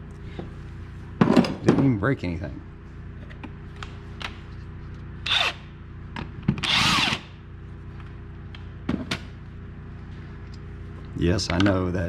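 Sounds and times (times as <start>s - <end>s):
power drill motor spinning: 5.2s - 5.8s, 6.5s - 7.4s.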